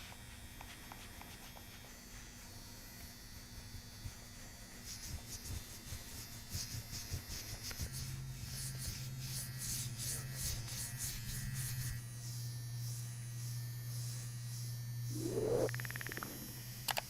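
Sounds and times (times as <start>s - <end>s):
small electric motor humming: 6.2s - 17.0s
soft rhythmic swishing: 15.1s - 16.6s.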